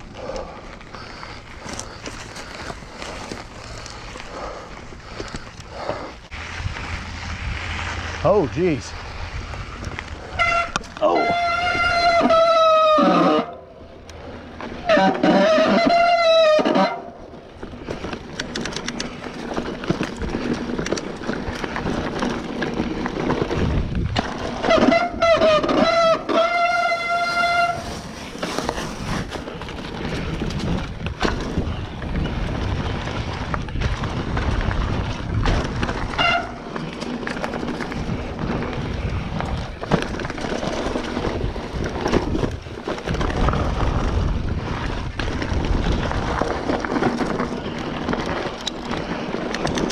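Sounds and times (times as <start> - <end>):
bike rattling over bumps: 0.0 - 49.9
bike tyres rolling on dirt: 0.0 - 49.9
bike brakes squealing: 10.3 - 13.6, 14.8 - 17.1, 24.6 - 28.9.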